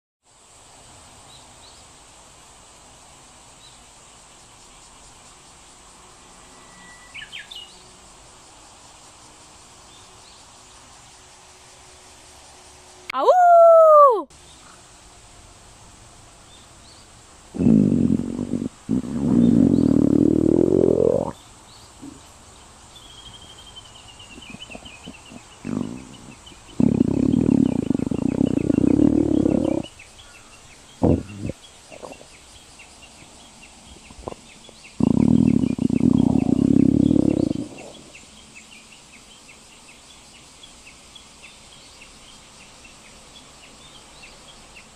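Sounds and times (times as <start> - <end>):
stomach growling: 17.6 - 21.4, 24.3 - 29.9, 31.0 - 32.3, 35.0 - 38.1
stomach gurgles: 17.6 - 21.4, 24.4 - 29.9, 31.0 - 32.3, 35.0 - 38.1.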